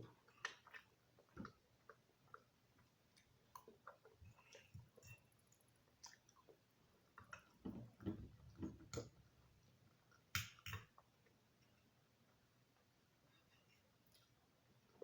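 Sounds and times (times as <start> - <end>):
person chewing food: 0.0 - 11.7.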